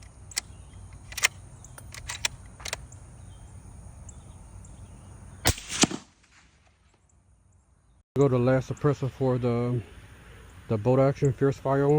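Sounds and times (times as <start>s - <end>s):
rifle bolt metallic clicks: 0.0s - 2.9s
rifle shots: 5.4s - 6.7s.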